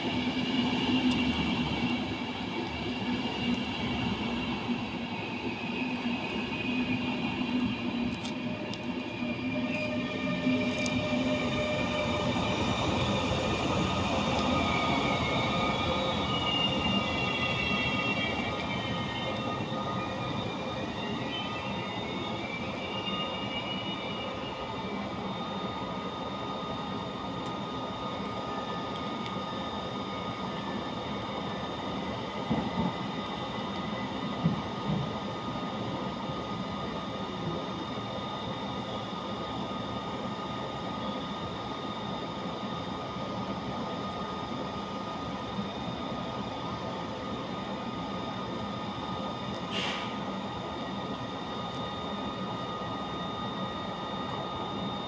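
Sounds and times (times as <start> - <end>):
train equipment humming: 0.0 - 24.5
train wheels squealing: 0.0 - 55.0.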